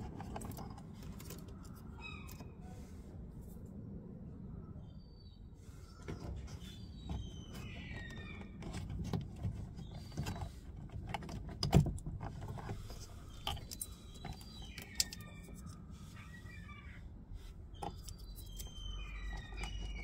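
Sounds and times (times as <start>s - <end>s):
short squeaks: 17.6s - 20.0s.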